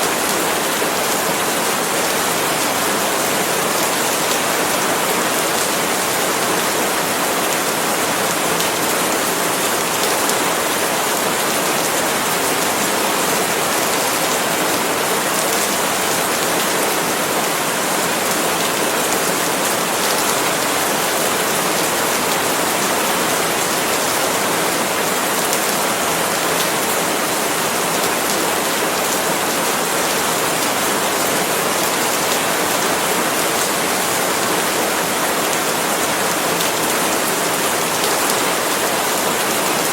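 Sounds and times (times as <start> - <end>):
heavy rain on leaves: 0.0 - 39.9.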